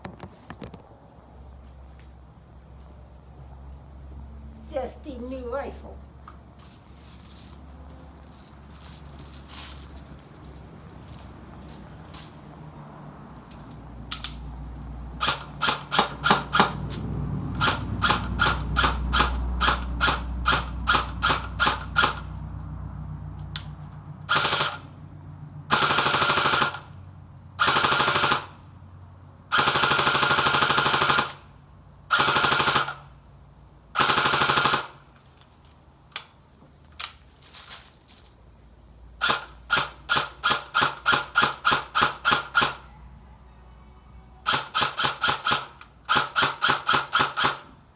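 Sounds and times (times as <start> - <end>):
full-auto bursts: 15.2 - 22.4, 24.3 - 25.0, 25.7 - 27.0, 27.6 - 28.7, 29.5 - 31.5, 32.1 - 33.1, 33.9 - 35.1, 39.2 - 42.9, 44.4 - 47.8.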